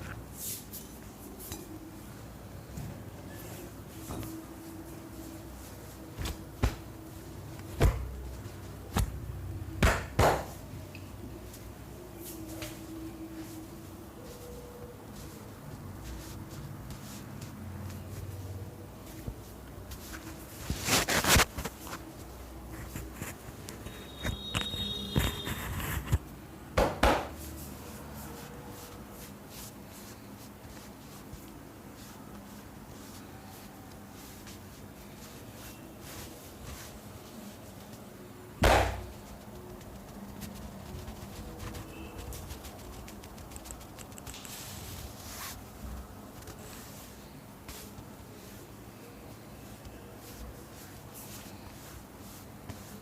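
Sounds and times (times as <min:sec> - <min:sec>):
hand slaps on body: 0:09.8 - 0:10.6, 0:38.6 - 0:39.1
soft tapping and rubbing: 0:10.2 - 0:26.4, 0:27.3 - 0:38.3, 0:39.0 - 0:53.0.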